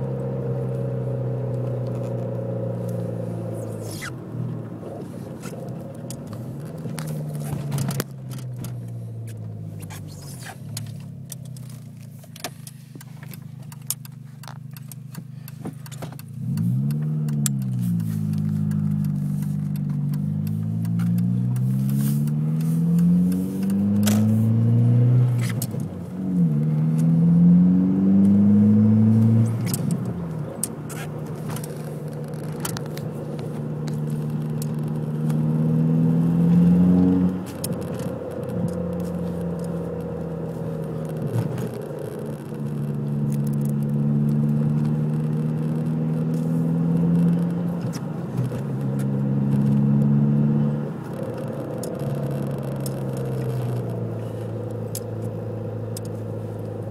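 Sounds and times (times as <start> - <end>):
car engine running: 0.0 - 56.9
sharp clicks: 10.1 - 24.3.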